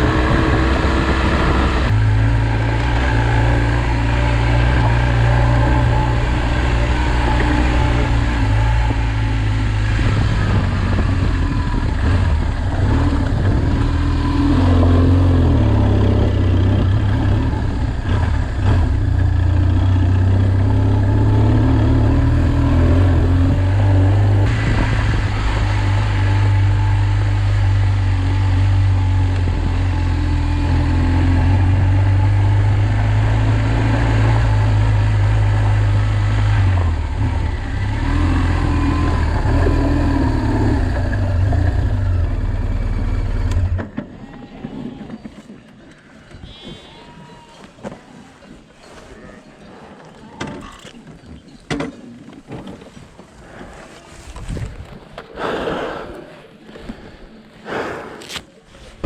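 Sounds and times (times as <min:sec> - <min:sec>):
tractor engine under load: 0:00.0 - 0:46.2.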